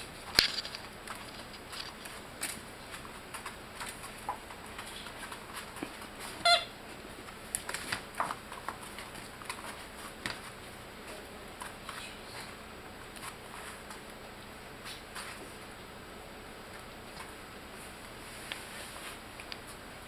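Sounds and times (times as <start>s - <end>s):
puppies scratching and clicking: 0.0s - 14.2s, 16.7s - 19.8s
puppy squeaking: 6.4s - 6.7s.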